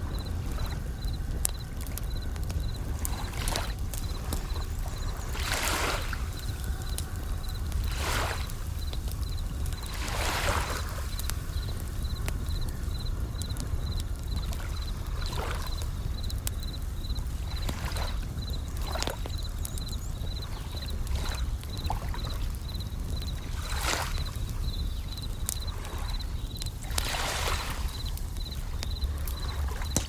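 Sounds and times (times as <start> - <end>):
steady low rumble: 0.0 - 10.1
waves washing in: 0.0 - 19.2, 25.6 - 30.0
campfire crackling: 0.0 - 30.0
crickets chirping: 0.0 - 30.0.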